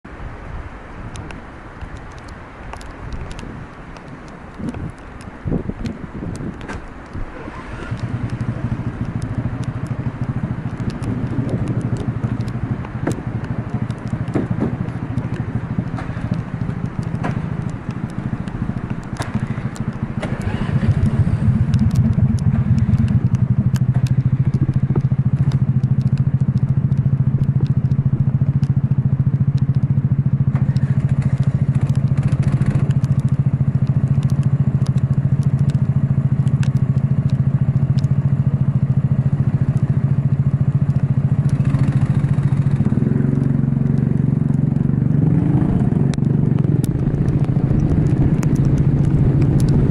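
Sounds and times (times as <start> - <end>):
clicks and crackles: 1.1 - 49.9
racing kart engine running hard: 7.3 - 25.5, 30.5 - 33.2, 37.9 - 49.9.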